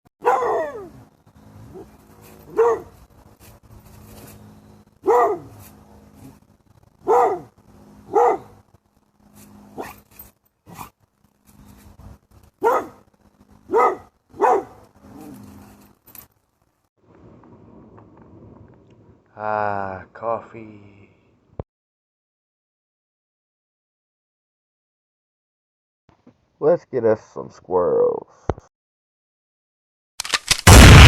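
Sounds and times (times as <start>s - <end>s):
dog barking: 0.2s - 0.9s, 2.5s - 2.9s, 5.0s - 5.5s, 7.0s - 7.5s, 8.1s - 8.6s, 9.8s - 10.0s, 12.6s - 13.0s, 13.7s - 14.8s.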